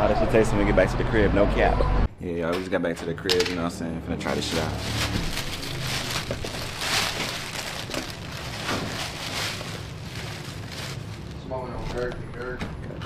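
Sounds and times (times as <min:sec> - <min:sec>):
bags and containers crinkling: 0:04.2 - 0:12.0.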